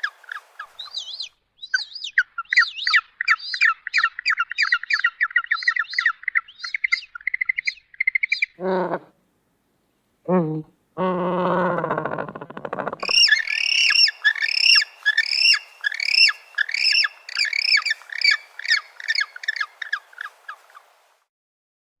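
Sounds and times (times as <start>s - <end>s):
penguin chick buzzy call: 11.6s - 20.9s
penguin chick high peeping calls: 13.0s - 20.9s.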